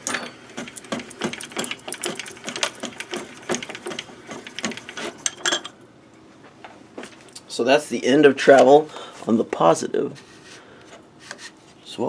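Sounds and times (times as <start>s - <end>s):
mill table feed clicking and rattling: 0.0s - 5.7s.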